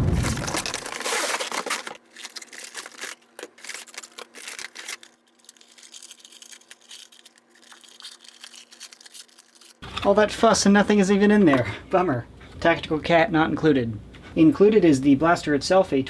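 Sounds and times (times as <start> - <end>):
packaging rustling and crinkling: 0.0 - 9.8.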